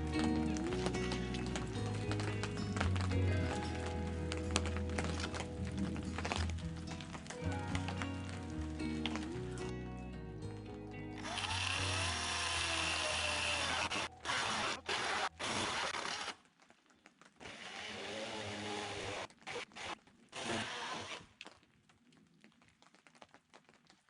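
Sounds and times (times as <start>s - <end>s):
background music: 0.0s - 16.0s
power saw cutting wood: 11.2s - 16.4s, 17.4s - 21.2s.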